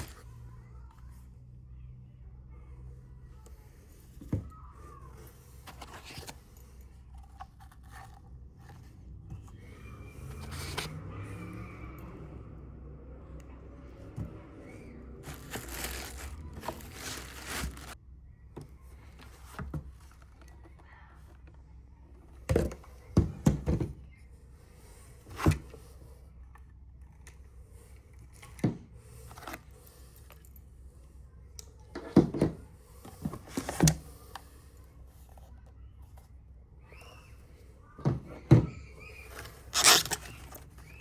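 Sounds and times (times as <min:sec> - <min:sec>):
packaging rustling and crinkling: 0:15.2 - 0:18.0.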